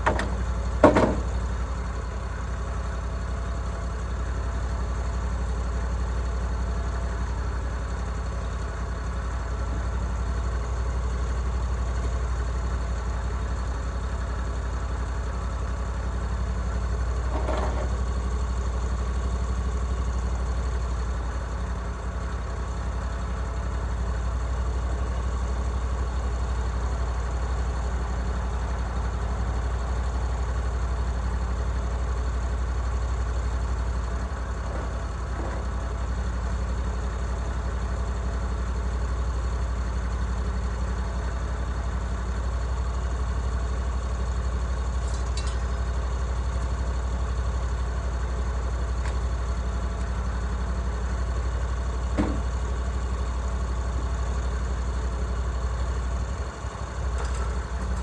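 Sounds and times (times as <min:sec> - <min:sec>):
gasoline engine running: 0:00.0 - 0:58.0.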